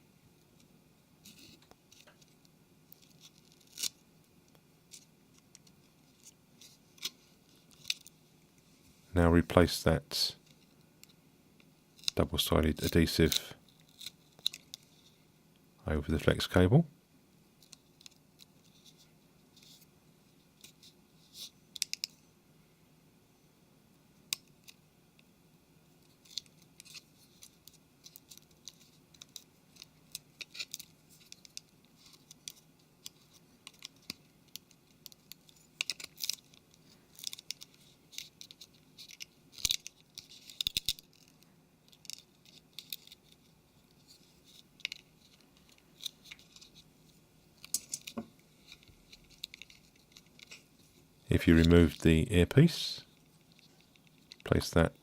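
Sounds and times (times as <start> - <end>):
small parts and tools clicking: 21.7 - 22.2, 26.0 - 46.8, 47.6 - 50.7.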